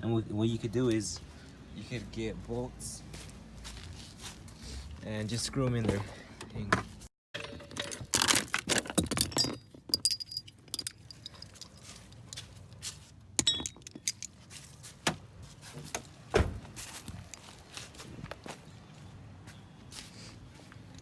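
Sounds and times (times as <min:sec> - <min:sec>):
metal hardware clinking: 0:07.4 - 0:12.4, 0:13.4 - 0:14.4.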